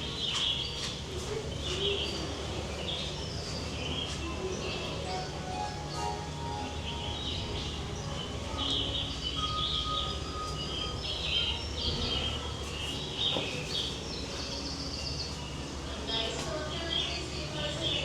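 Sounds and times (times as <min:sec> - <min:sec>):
birds chirping: 0:04.8 - 0:18.0.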